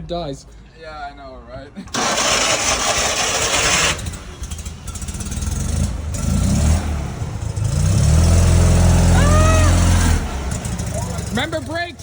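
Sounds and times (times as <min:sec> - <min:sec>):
small car engine revving: 0:01.9 - 0:11.8.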